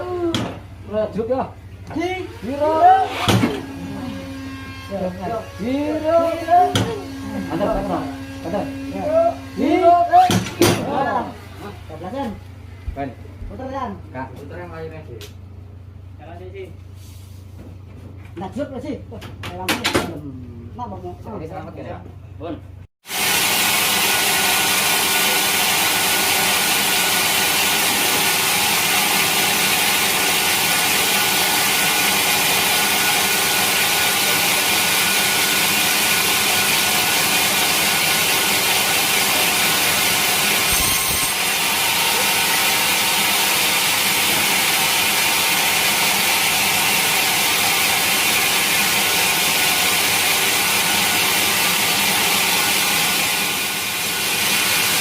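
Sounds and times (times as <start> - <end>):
sawmill saw cutting log: 1.9 - 12.4, 23.0 - 55.0.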